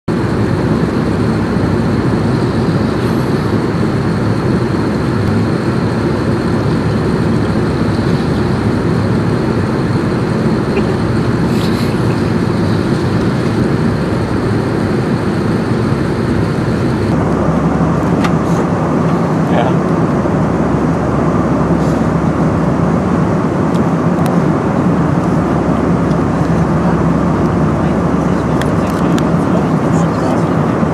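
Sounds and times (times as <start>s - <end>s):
airliner engine drone: 0.1s - 30.9s.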